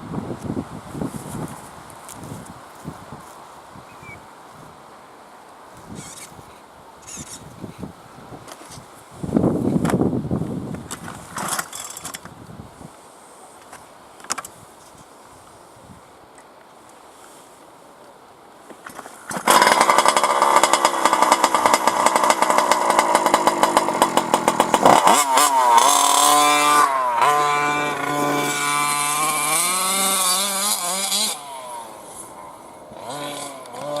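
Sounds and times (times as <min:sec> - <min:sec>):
small two-stroke engine revving: 0:06.0 - 0:06.3, 0:19.3 - 0:34.0.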